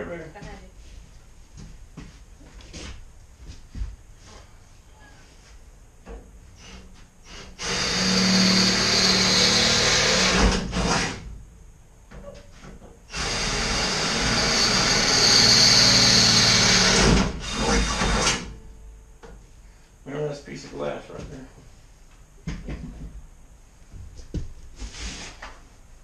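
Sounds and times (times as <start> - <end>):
power drill running: 6.6 - 11.2, 13.1 - 18.5.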